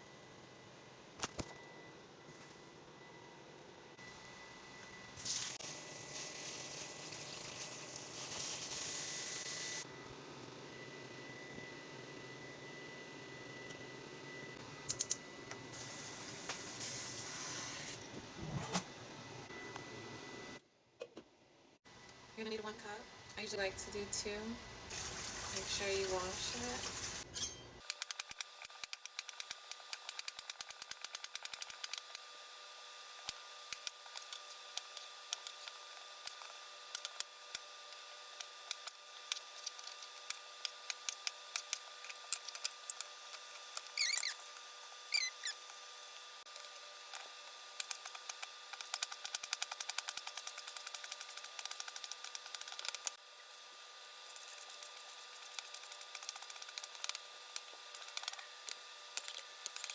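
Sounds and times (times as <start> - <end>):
utensils clicking and tapping: 38.4 - 44.0, 46.5 - 53.2, 54.3 - 59.9
brief squeaks: 43.9 - 44.4, 45.1 - 45.6.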